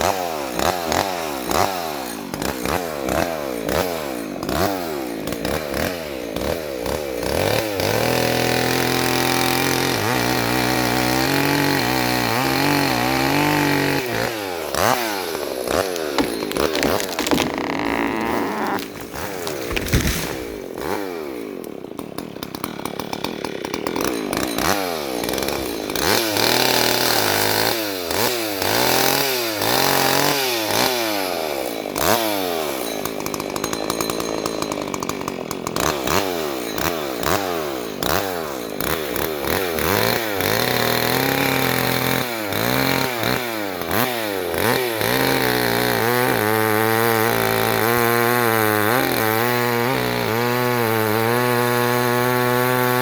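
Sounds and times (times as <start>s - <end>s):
chainsaw revving: 0.0s - 53.0s.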